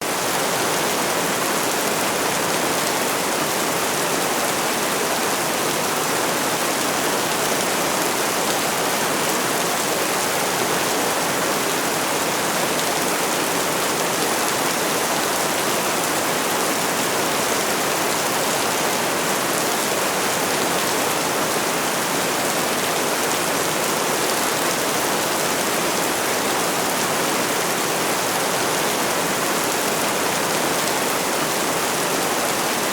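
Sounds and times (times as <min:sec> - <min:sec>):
steady rain falling: 0:00.0 - 0:32.9.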